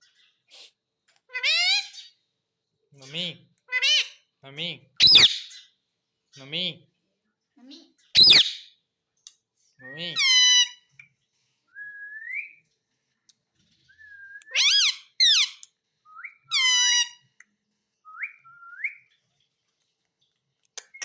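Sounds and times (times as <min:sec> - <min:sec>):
parrot harsh calls: 0:01.3 - 0:02.1, 0:03.7 - 0:04.2, 0:05.0 - 0:05.6, 0:08.2 - 0:08.7, 0:10.2 - 0:10.9, 0:14.5 - 0:15.6, 0:16.5 - 0:17.2
parrot whistling: 0:05.0 - 0:05.6, 0:08.2 - 0:08.7.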